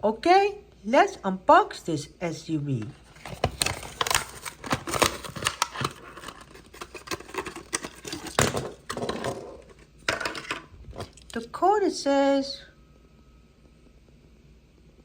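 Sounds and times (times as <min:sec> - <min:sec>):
plastic packaging crackling: 0:03.0 - 0:11.2.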